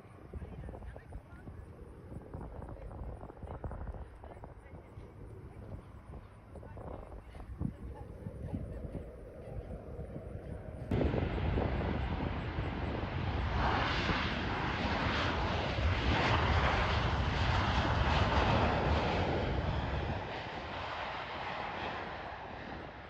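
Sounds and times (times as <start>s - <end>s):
jet engines passing by: 0.0s - 23.0s.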